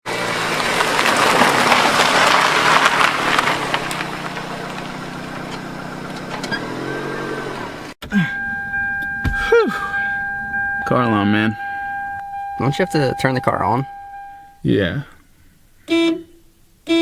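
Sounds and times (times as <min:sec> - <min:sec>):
car engine running: 0:00.0 - 0:09.2.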